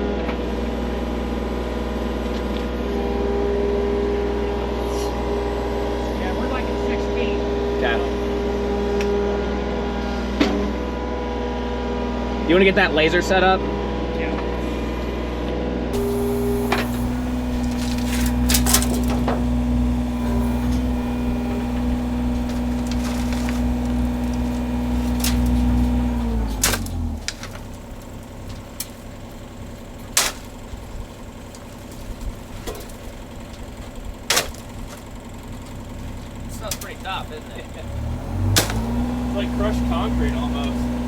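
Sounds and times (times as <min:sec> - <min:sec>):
machine engine running: 0:16.0 - 0:41.0.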